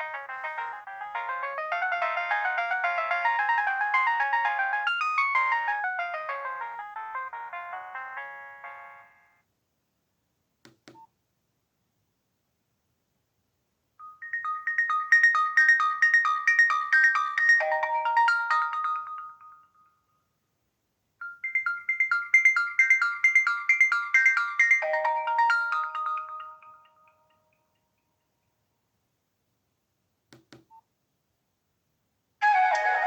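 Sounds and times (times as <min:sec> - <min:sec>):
polyphonic phone ringtone: 0:00.0 - 0:09.4, 0:14.0 - 0:19.8, 0:21.2 - 0:27.6.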